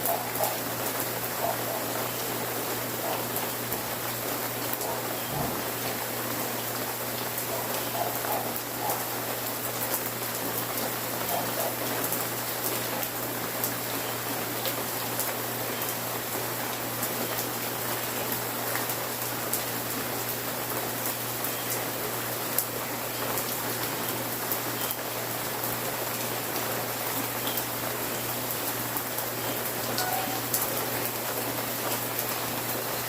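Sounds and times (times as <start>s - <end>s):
steady rain hiss: 0.0s - 33.0s.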